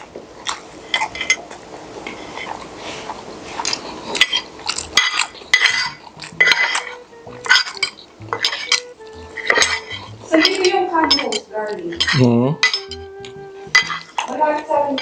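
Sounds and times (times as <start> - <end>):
cutlery clinking on a plate: 3.6 - 15.0.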